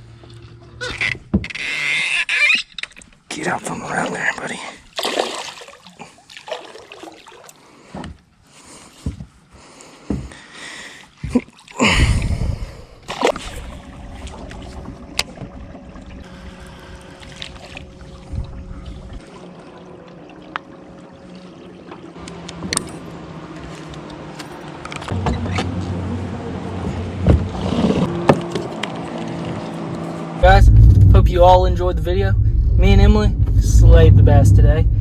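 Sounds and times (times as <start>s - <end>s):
low rumble: 13.5s - 19.2s, 30.4s - 35.0s
loud rush of noise: 30.4s - 35.0s.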